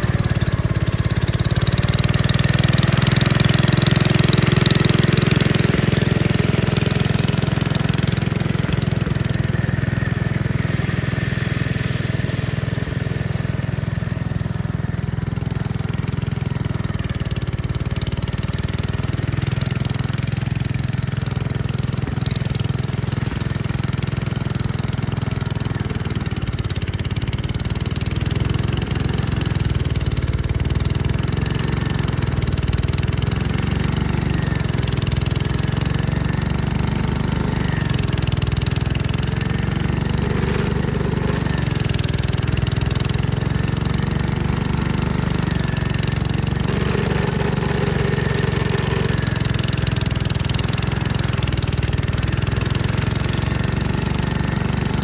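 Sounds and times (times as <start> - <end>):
tractor engine running: 0.0 - 55.0.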